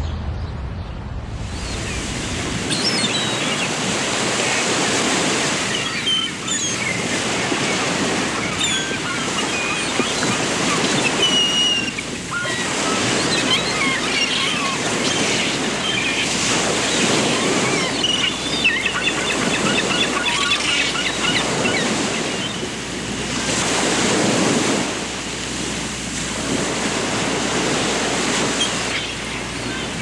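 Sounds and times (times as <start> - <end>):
steady rushing noise: 0.0 - 5.7
small birds chirping and whistling: 1.6 - 22.6, 28.5 - 30.0.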